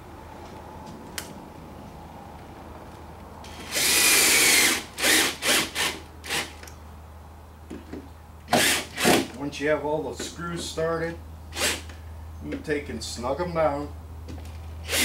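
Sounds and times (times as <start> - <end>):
power drill driving screws: 3.5 - 6.6, 8.5 - 9.3, 11.5 - 11.9.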